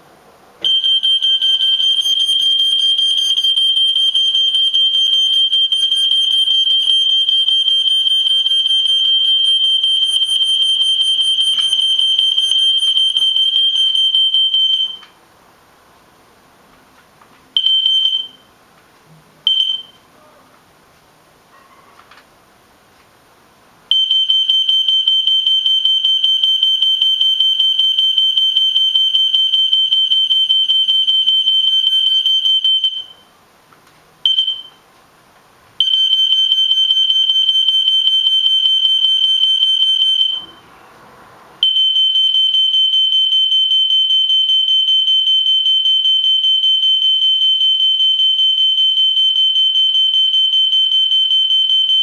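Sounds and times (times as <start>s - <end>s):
high-pitched alarm tone: 0.6s - 15.0s, 35.8s - 40.7s.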